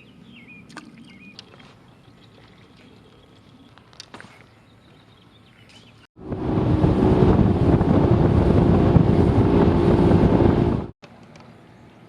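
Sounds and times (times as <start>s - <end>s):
outboard motor running: 6.2s - 10.9s
wind rushing over microphone: 6.2s - 11.0s.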